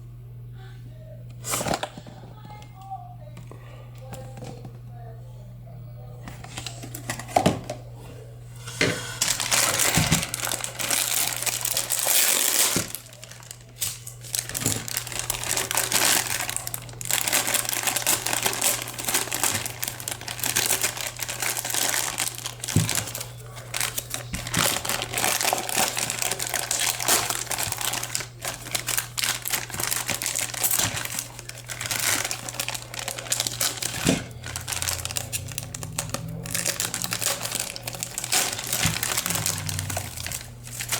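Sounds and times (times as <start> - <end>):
low electrical hum: 0.0 - 40.9
plastic packaging crinkling: 8.6 - 40.9.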